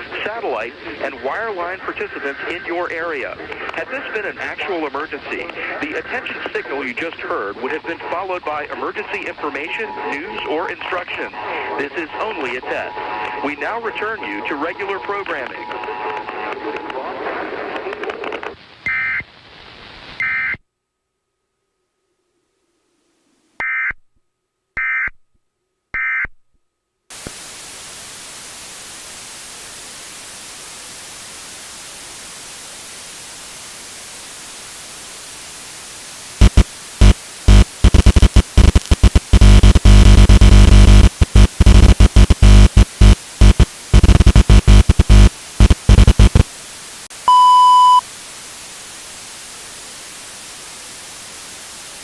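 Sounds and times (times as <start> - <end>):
static hiss: 0.0 - 20.6, 27.1 - 52.0
harsh stuttering distorted noise: 36.4 - 46.5.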